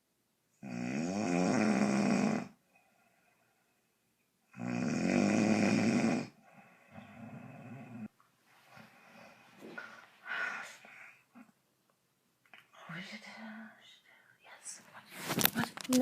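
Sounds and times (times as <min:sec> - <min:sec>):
woman snoring loudly: 0:00.6 - 0:02.6, 0:04.5 - 0:08.1
quiet breath: 0:02.6 - 0:04.1, 0:06.3 - 0:11.6, 0:12.6 - 0:15.3.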